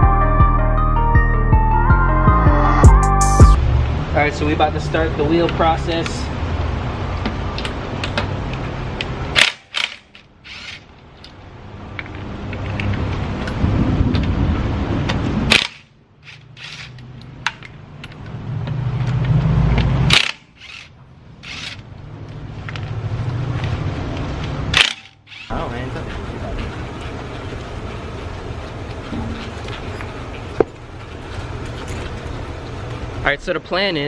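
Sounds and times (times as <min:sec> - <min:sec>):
power tool ratcheting: 0:09.4 - 0:10.9, 0:15.5 - 0:17.3, 0:19.8 - 0:21.9, 0:24.7 - 0:25.6
sharp metallic clank: 0:24.7 - 0:25.5.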